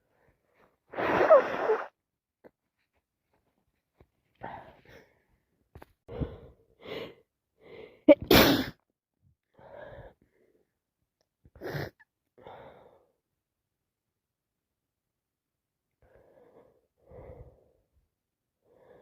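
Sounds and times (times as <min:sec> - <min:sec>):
woman sneezing loudly: 0:01.0 - 0:01.9, 0:08.1 - 0:08.8.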